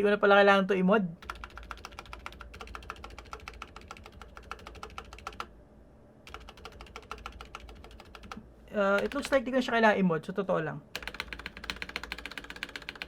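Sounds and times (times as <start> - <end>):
mechanical keyboard typing: 1.2 - 5.5, 6.2 - 8.4, 9.0 - 9.5, 11.0 - 13.0.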